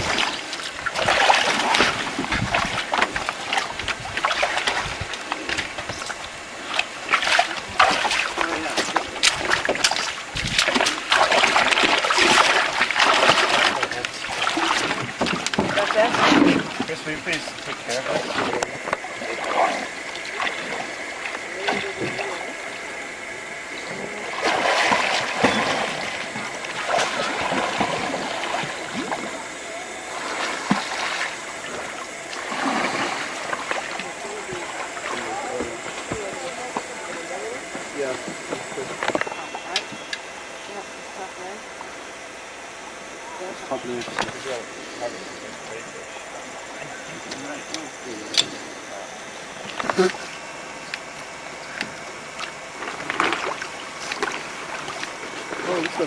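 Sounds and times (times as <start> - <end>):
paddles splashing water: 0.0 - 42.2, 43.2 - 56.0.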